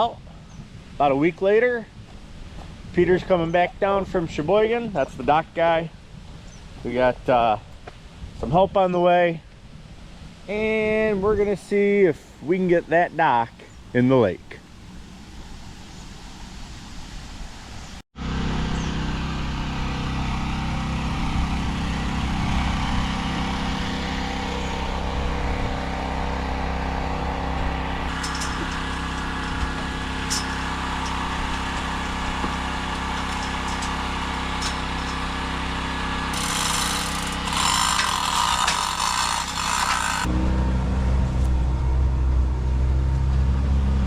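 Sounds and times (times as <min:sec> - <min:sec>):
engine running: 0:14.6 - 0:44.0.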